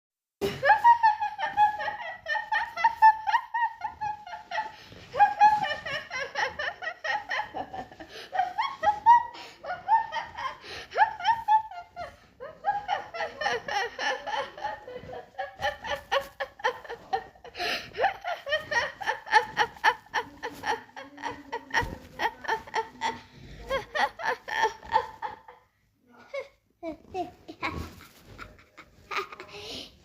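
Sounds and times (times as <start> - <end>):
woman laughing: 0.4 - 25.6, 26.3 - 29.8.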